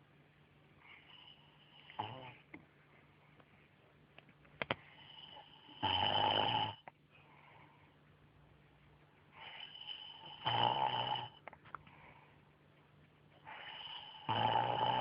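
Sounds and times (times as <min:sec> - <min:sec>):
man snoring: 0:01.8 - 0:02.4, 0:05.1 - 0:06.8, 0:09.4 - 0:11.4, 0:13.5 - 0:15.0.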